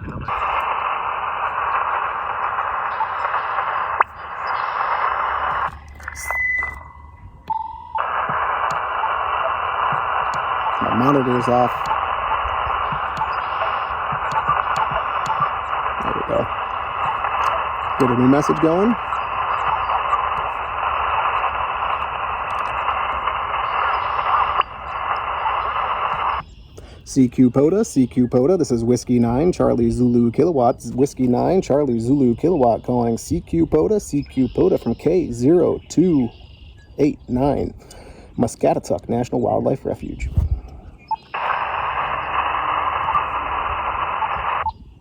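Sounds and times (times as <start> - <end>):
radio band noise hiss: 0.0 - 36.4, 37.0 - 44.8
high beep: 5.4 - 12.0, 12.6 - 21.1
short low beep: 5.5 - 8.4.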